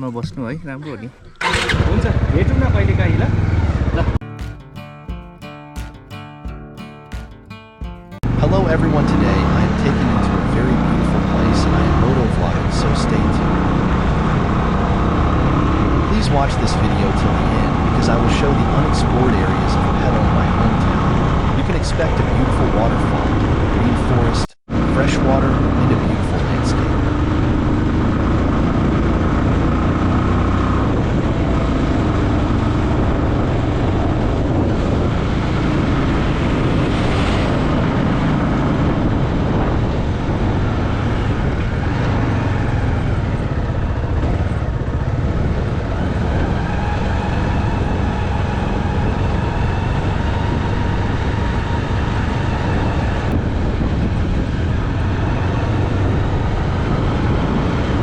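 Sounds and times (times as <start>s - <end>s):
motorcycle engine running: 1.4s - 21.6s, 24.7s - 34.9s
wind noise on microphone: 25.6s - 58.0s.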